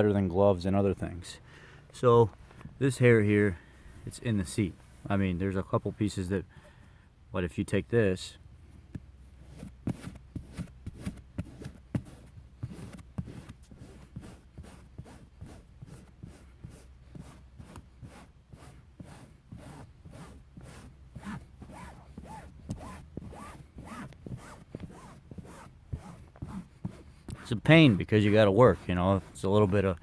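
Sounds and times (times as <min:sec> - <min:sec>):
rubber scraping upholstery: 0:09.2 - 0:30.0.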